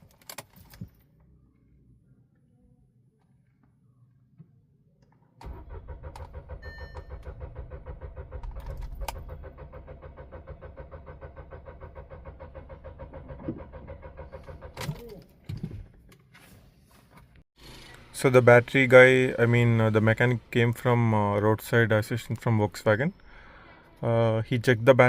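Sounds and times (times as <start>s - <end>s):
starter cranking engine: 5.4s - 15.4s.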